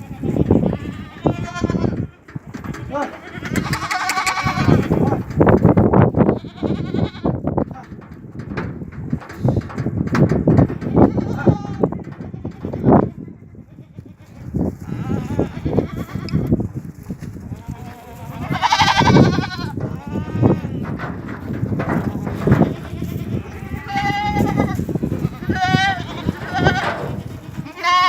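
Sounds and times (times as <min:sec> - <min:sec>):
goats bleating: 0:00.0 - 0:05.2, 0:06.3 - 0:07.4, 0:10.6 - 0:16.6, 0:17.5 - 0:28.0.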